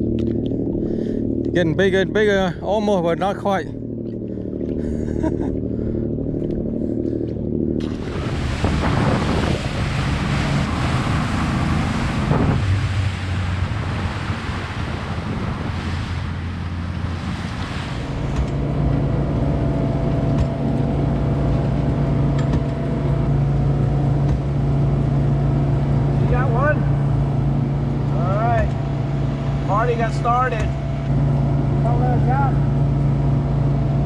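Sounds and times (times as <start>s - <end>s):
boat engine hum: 0.0s - 34.0s
wind: 0.0s - 34.0s
water rushing: 7.8s - 34.0s.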